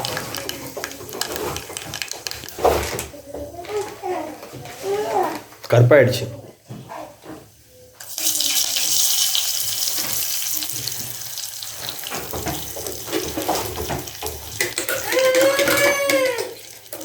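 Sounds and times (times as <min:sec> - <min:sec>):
water running from a tap: 0:08.0 - 0:17.0.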